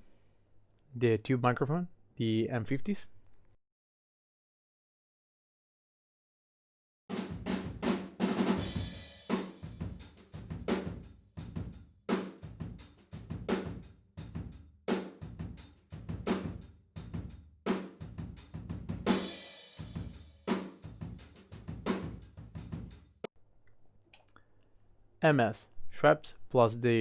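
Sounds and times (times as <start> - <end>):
distant roomy drum kit groove: 7.1 - 23.3.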